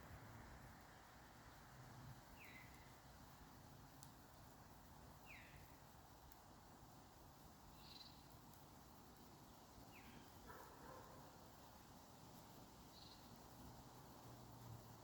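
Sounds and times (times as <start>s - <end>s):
faint bird chirps: 2.2s - 3.1s, 5.2s - 5.8s, 7.6s - 8.5s, 9.3s - 12.0s, 12.7s - 13.6s.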